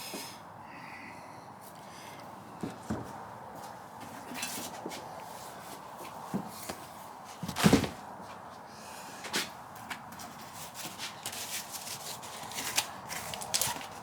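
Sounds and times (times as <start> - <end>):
small clicks and rustles: 10.8 - 14.0.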